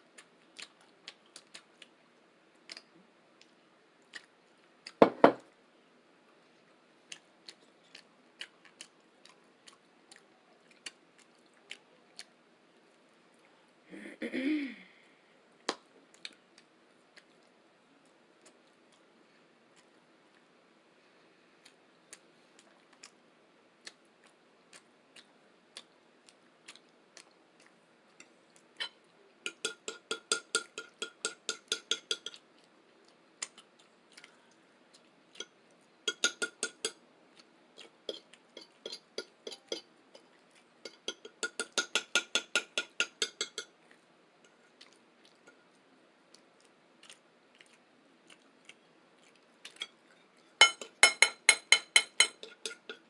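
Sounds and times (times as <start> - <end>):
plate being tapped: 5.0 - 5.4, 29.5 - 32.4, 36.1 - 37.0, 40.9 - 43.7, 50.6 - 53.0.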